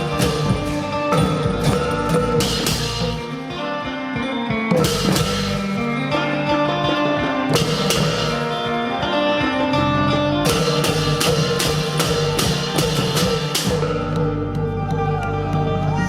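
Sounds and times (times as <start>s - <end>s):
drums: 0.0s - 16.0s
plucked strings: 0.0s - 16.0s
wooden xylophone notes: 10.2s - 16.0s.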